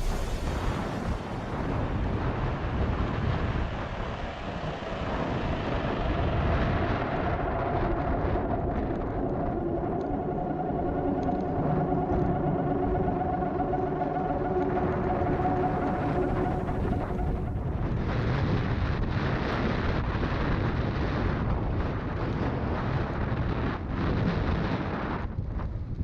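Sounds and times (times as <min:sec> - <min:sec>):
multi-tone hum: 0:00.0 - 0:20.0
wind buffeting: 0:00.0 - 0:26.0.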